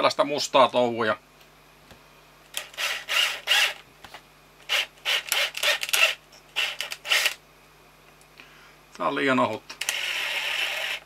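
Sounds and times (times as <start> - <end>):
drill-driven wire stripper scraping: 2.5 - 3.8, 4.6 - 7.4, 9.8 - 11.0.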